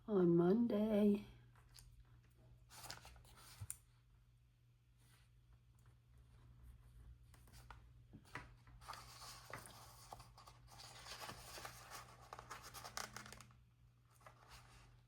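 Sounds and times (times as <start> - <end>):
paper scratching and rustling: 8.8 - 13.5.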